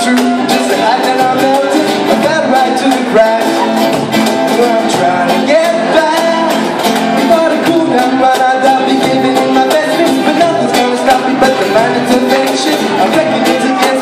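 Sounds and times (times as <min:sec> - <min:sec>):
busy percussion beat: 0:00.0 - 0:14.0
song with singing and guitar: 0:00.0 - 0:14.0.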